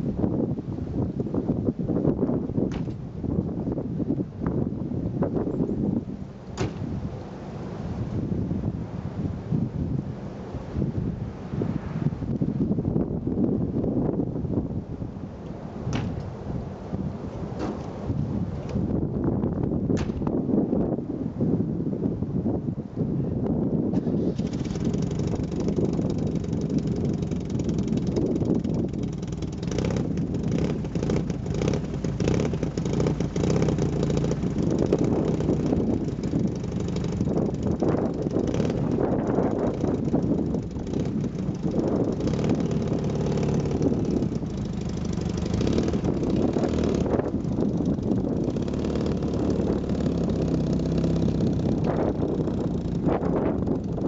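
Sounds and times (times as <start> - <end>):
small car engine revving: 24.0 - 54.0.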